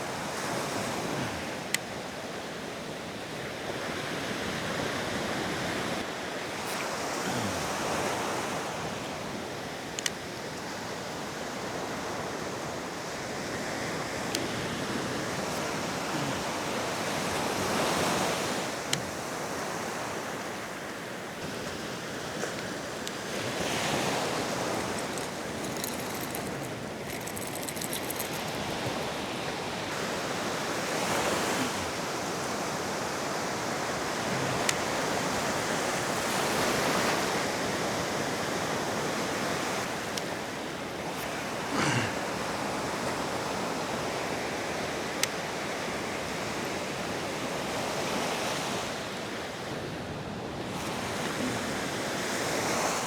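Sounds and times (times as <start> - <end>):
faint sharp clicks: 10.0 - 10.2.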